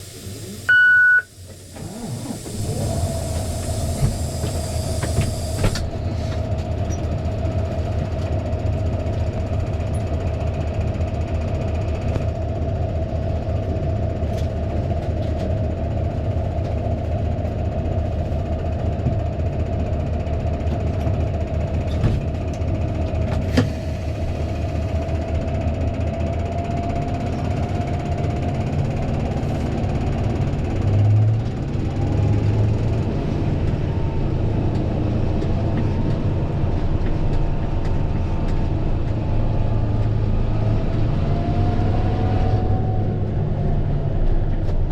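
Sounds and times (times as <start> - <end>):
tractor diesel engine running: 0.0 - 44.9
short high electronic beep: 0.7 - 1.3.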